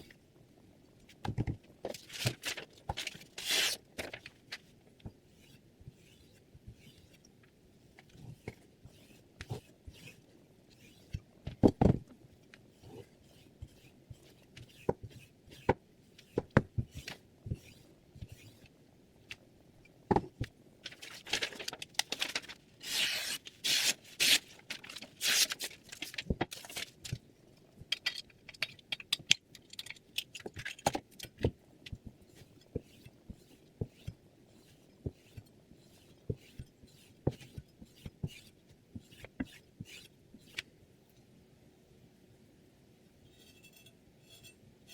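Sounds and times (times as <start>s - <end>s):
knife blade scraping: 8.9s - 11.2s, 43.3s - 44.9s.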